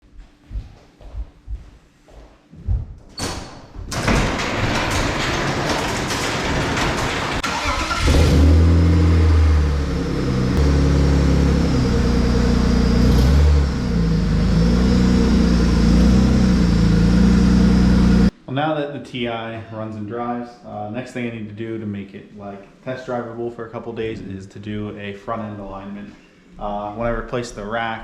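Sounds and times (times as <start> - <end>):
car engine starting and revving: 4.8 - 18.3.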